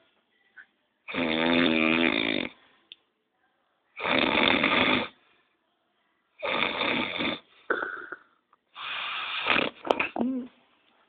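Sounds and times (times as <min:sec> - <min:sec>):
loud rasping snoring: 0:01.1 - 0:02.6, 0:04.0 - 0:05.2, 0:06.4 - 0:08.2, 0:08.8 - 0:09.8.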